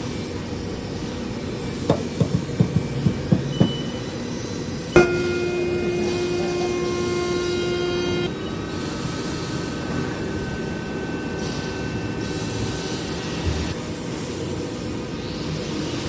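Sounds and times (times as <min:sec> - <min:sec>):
faint high whine: 0:03.4 - 0:13.4
machine running: 0:05.0 - 0:13.4.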